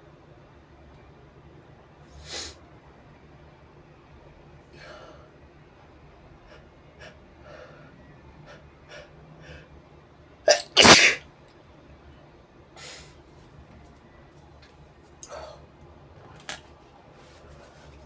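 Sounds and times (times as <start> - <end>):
person sneezing: 10.5 - 11.2
short catching breaths: 10.5 - 11.2.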